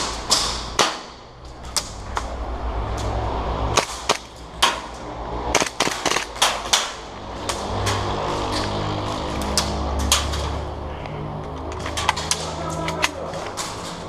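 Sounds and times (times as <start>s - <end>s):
airsoft gun shots: 5.5s - 7.0s.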